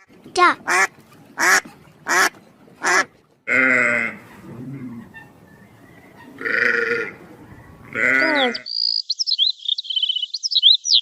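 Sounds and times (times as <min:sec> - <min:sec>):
duck quacking: 0:00.0 - 0:05.4.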